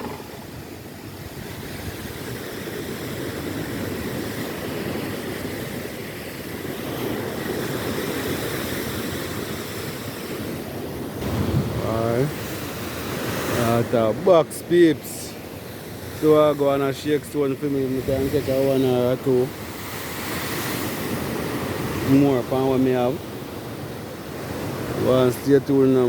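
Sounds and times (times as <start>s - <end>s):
sea surf washing on rocks: 0.0s - 26.0s
wind: 0.0s - 26.0s.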